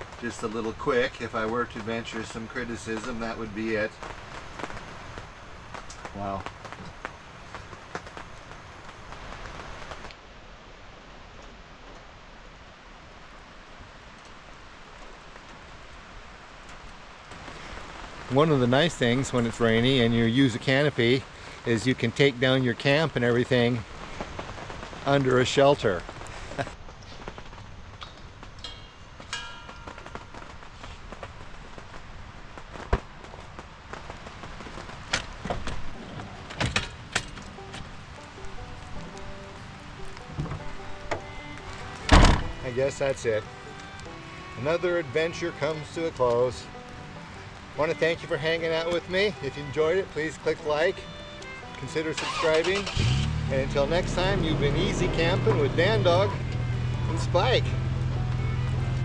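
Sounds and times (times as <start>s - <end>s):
steady rain falling: 0.0s - 59.0s
short ringing sound: 28.6s - 30.3s
camp gear knocks and thumps: 35.1s - 38.0s, 42.1s - 42.6s.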